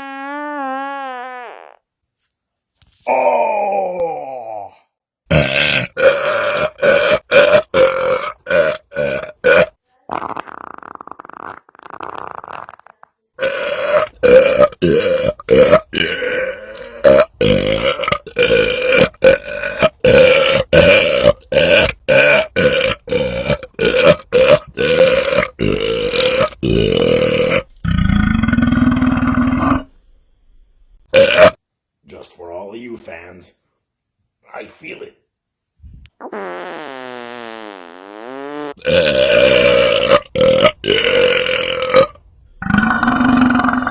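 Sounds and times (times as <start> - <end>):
man belching: 3.1 - 9.8, 13.4 - 29.9, 31.1 - 31.6, 38.8 - 43.9.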